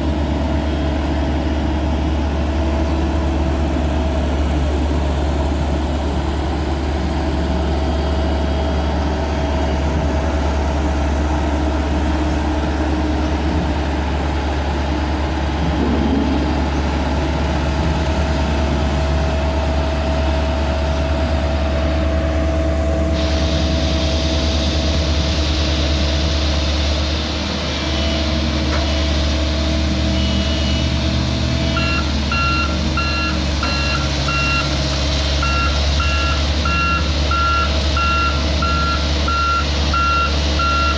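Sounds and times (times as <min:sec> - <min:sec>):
heavy diesel machinery droning: 0:00.0 - 0:40.9
reversing alarm beeping: 0:27.9 - 0:40.9.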